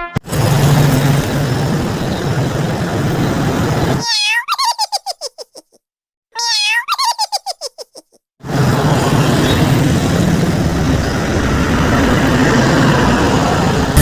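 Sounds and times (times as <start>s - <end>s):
vehicle engine rumble: 0.2s - 4.0s, 8.4s - 14.0s
high-pitched giggle: 6.7s - 8.2s.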